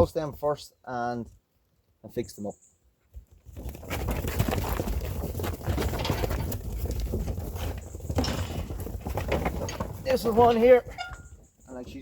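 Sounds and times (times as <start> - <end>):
sheep hooves clattering: 3.0 - 12.0.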